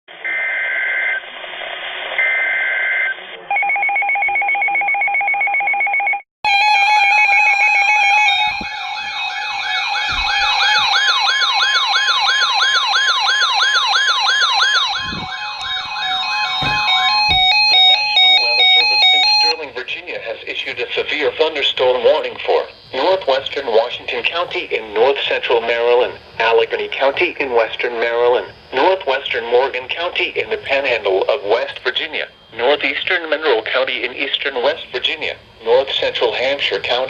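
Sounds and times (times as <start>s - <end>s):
electronic wailing siren: 0.2s - 1.2s, 6.5s - 20.0s
stepped synthesized tones: 7.1s - 12.5s, 13.1s - 20.0s
warbling digital header bursts: 13.7s - 19.9s
two-tone attention signal: 14.8s - 19.7s.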